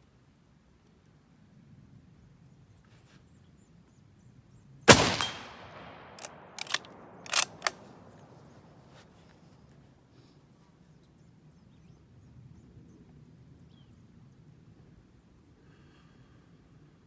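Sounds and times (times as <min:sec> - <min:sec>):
rifle bolt clicks: 0:04.9 - 0:07.9
rifle shot echoing: 0:04.9 - 0:08.0.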